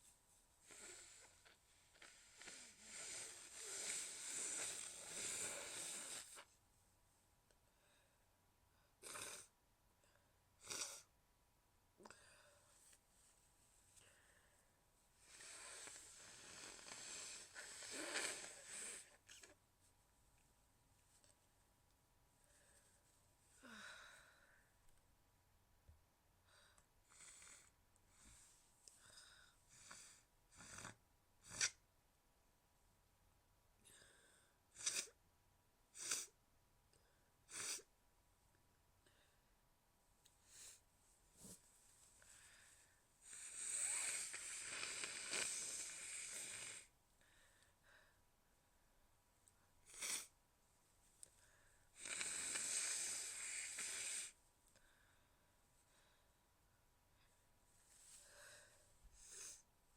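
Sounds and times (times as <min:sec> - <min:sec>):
nose blowing: 0:00.6 - 0:06.4, 0:09.0 - 0:09.5, 0:10.6 - 0:11.1, 0:15.2 - 0:19.5, 0:29.8 - 0:31.8, 0:34.7 - 0:35.2, 0:36.0 - 0:36.4, 0:37.5 - 0:37.9, 0:43.3 - 0:46.9, 0:49.9 - 0:50.3, 0:52.0 - 0:54.4.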